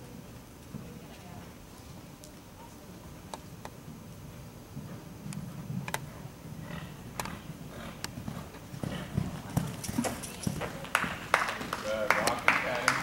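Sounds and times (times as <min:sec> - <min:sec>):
horse hoofbeats: 0:03.8 - 0:13.0.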